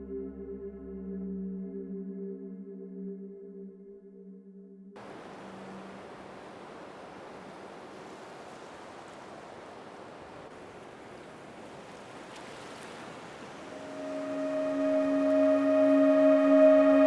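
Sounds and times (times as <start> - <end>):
ocean water washing: 5.0 - 17.0.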